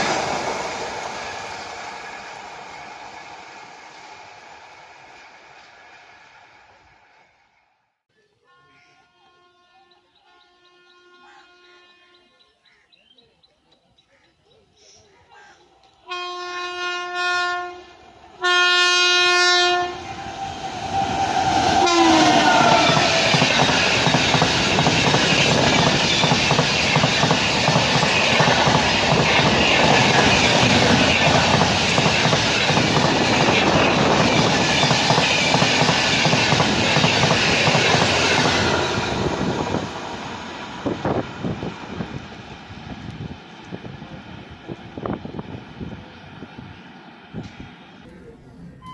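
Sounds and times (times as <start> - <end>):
locomotive horn blasts: 8.5 - 12.3, 16.1 - 23.5
train wheels clattering on track: 20.9 - 44.0.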